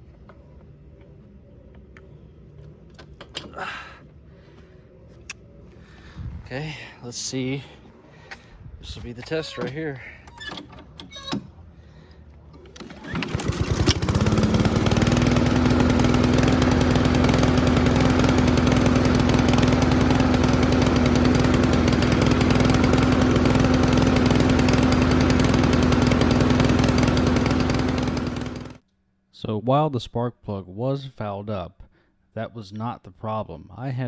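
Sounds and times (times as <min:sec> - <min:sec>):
lawn mower engine starting and running: 0:09.0 - 0:28.8.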